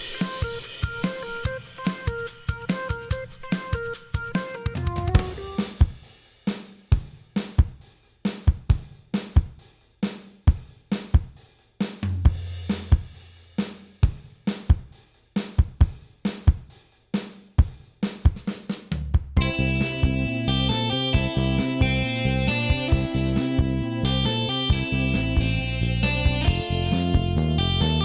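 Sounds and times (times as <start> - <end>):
drum kit beat: 0.0 - 28.0
held bass note: 19.4 - 28.0.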